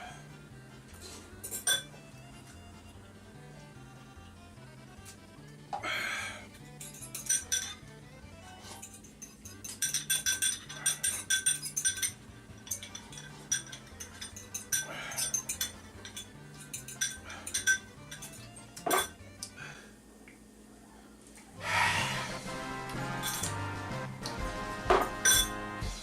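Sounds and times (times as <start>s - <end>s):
background music with bass line: 0.0s - 8.8s, 21.6s - 26.0s
utensil clinking and scraping bowl: 1.0s - 2.0s, 6.8s - 7.8s, 8.5s - 19.2s, 23.0s - 23.6s, 24.9s - 25.6s.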